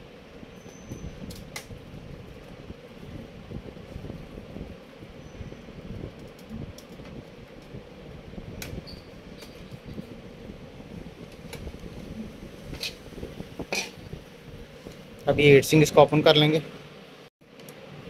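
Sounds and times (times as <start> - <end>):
computer cooling fan whirring: 0.0 - 18.0.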